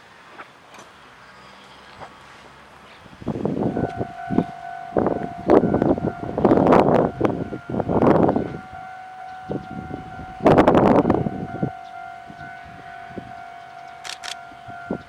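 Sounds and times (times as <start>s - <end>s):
wind buffeting microphone: 3.0s - 15.0s
steady high-pitched tone: 3.4s - 15.0s
sharp clicks: 13.8s - 14.6s.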